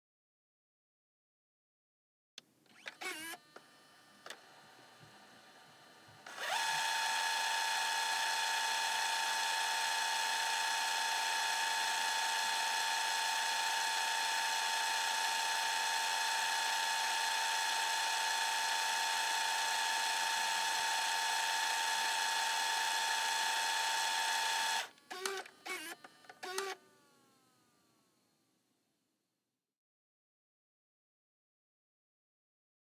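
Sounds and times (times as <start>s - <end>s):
tape motor whine: 2.7s - 26.9s
tape mechanism clicks and clunks: 25.0s - 26.8s.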